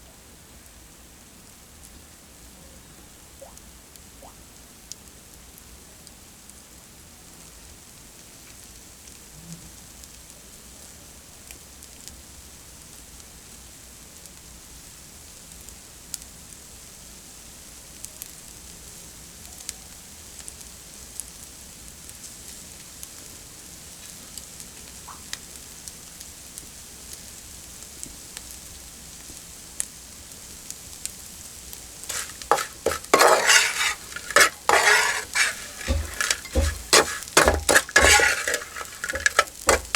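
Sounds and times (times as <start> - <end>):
utensil scraping a pan: 32.0 - 39.9
food sizzling in a pan: 32.1 - 39.9.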